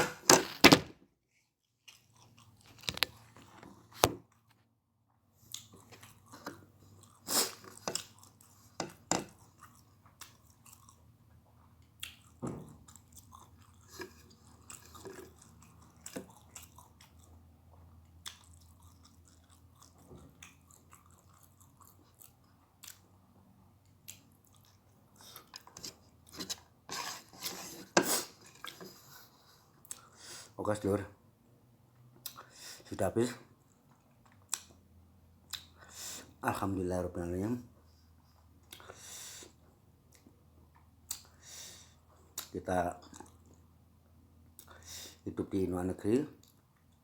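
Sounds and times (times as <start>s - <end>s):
person chewing food: 1.6s - 3.9s, 5.4s - 30.2s, 35.4s - 35.9s, 38.4s - 43.7s.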